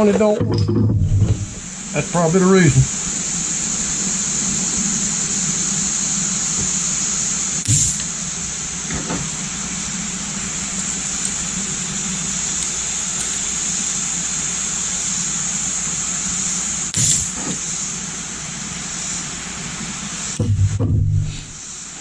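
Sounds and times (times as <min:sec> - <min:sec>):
machine humming and hissing: 0:01.4 - 0:22.0
sharp snap: 0:07.6 - 0:08.4, 0:10.1 - 0:17.7.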